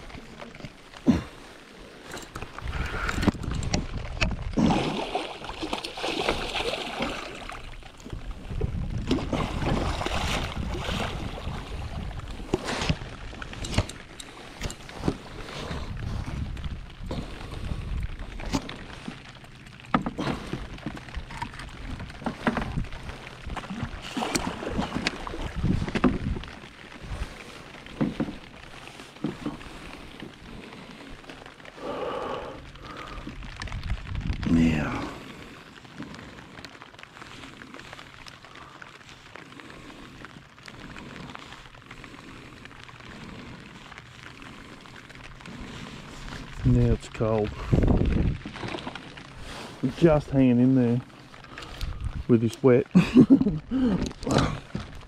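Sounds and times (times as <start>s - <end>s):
raindrops ticking on surfaces: 0.0s - 55.0s
rain hissing: 26.6s - 48.4s, 49.0s - 54.0s.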